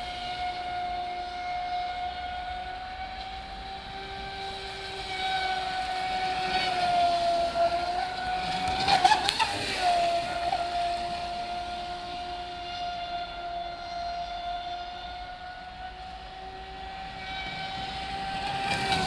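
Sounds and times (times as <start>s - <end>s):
electric motor high-pitched whine: 0.0s - 19.0s.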